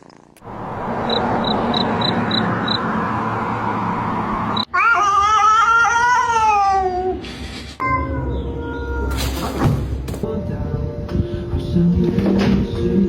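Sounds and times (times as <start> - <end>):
cat yowling: 4.7 - 7.2.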